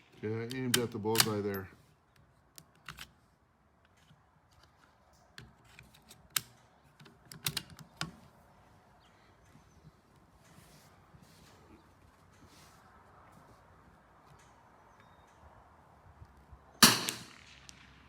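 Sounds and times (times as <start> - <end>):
rifle bolt clicking: 0.5 - 1.6.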